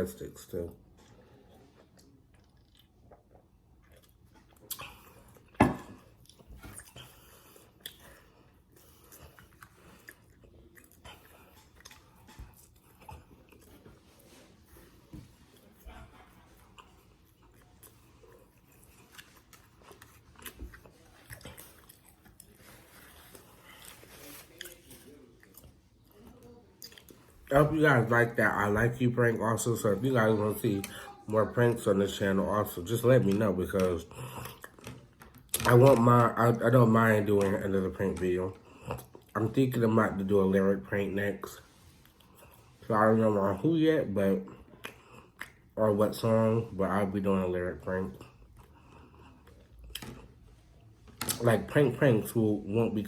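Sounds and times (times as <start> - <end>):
person chewing crusty bread: 0.8 - 27.5, 33.3 - 39.4, 44.5 - 45.8, 47.8 - 51.4
person biting and chewing: 16.7 - 25.8.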